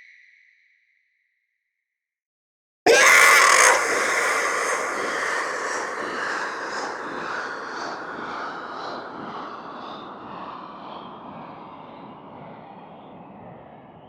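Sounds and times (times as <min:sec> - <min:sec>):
scream or creature cry: 0:02.9 - 0:09.2.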